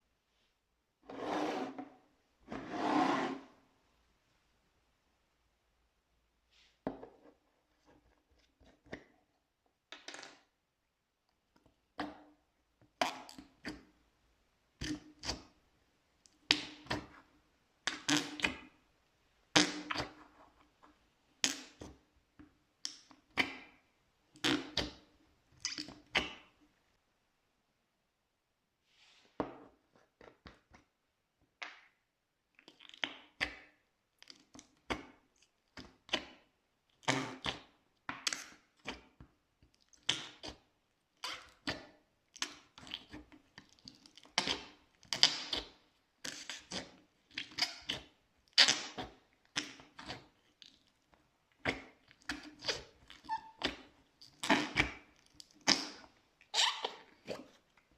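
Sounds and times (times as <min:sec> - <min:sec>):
slime squishing with wet clicks: 0:31.8 - 0:36.5, 0:41.2 - 0:55.8
slime squelches: 0:32.4 - 0:57.9.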